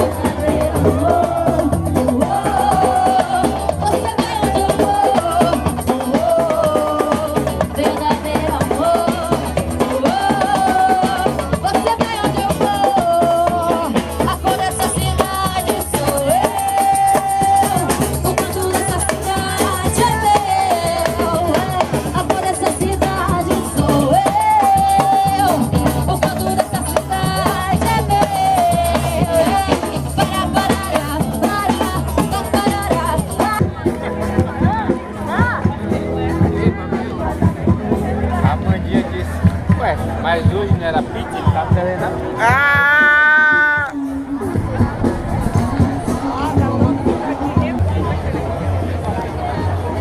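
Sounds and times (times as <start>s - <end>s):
person singing: 0.0s - 33.6s
shakers: 0.0s - 33.6s
percussion group drumming: 0.0s - 49.9s.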